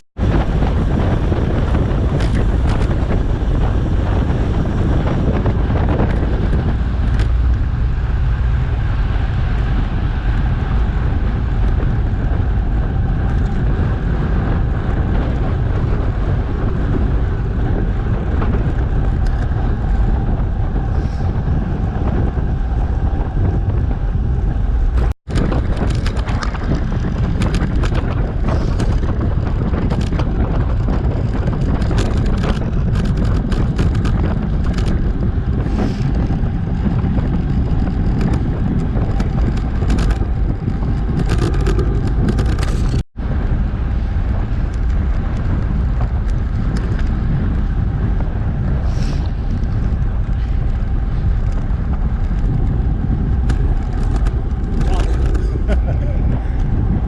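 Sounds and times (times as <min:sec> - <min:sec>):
wind rumbling on microphone: 0:00.0 - 0:57.0
quick clicks and rattles: 0:25.3 - 0:35.0, 0:38.0 - 0:43.0, 0:53.4 - 0:55.8.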